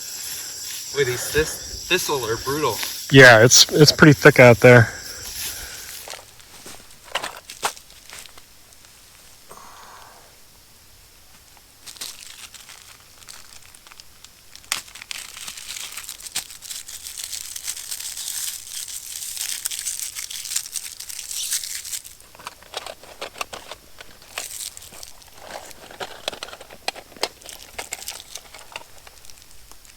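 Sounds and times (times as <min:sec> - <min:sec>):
crinkly material rustling: 0:06.0 - 0:09.2, 0:11.3 - 0:29.9.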